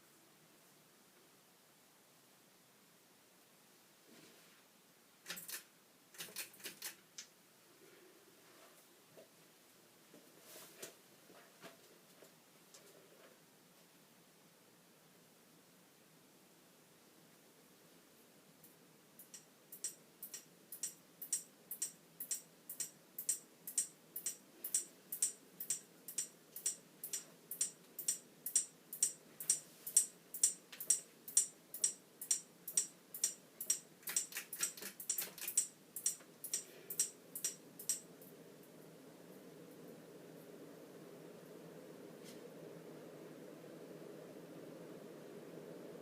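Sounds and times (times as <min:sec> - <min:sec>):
ceiling fan ticking: 0:18.6 - 0:38.8
rapid clicks: 0:19.2 - 0:38.0.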